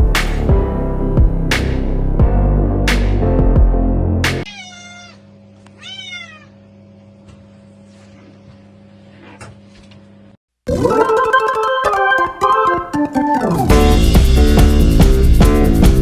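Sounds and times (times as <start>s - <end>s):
music: 0.0s - 4.5s, 10.8s - 16.0s
cat meowing: 4.5s - 6.6s.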